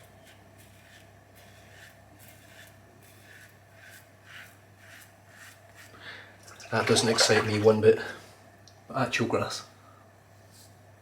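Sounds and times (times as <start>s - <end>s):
razor scraping stubble: 0.0s - 6.0s.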